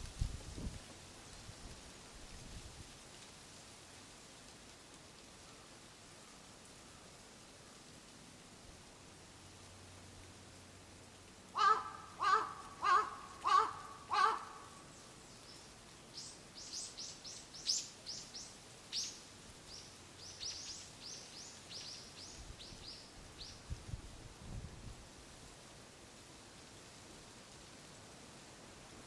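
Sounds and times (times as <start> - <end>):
crow cawing: 11.5 - 14.8
songbird chirps: 12.4 - 23.6.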